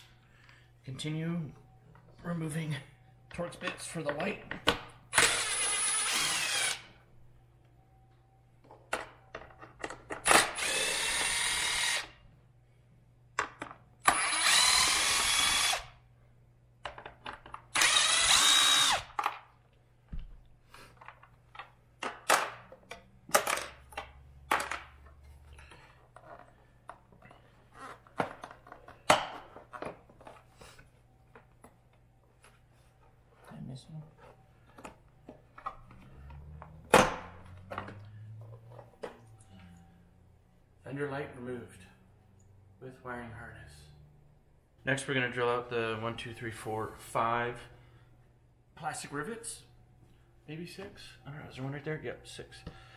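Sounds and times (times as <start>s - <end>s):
power drill spinning: 5.1s - 7.0s, 10.2s - 12.2s, 14.0s - 16.0s, 17.7s - 19.2s.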